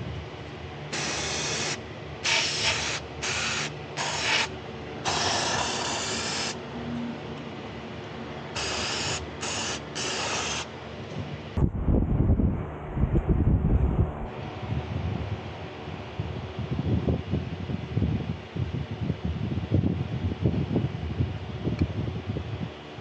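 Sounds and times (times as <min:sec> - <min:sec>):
aerosol spray hissing: 0:01.0 - 0:04.5, 0:05.1 - 0:06.6, 0:08.6 - 0:10.7.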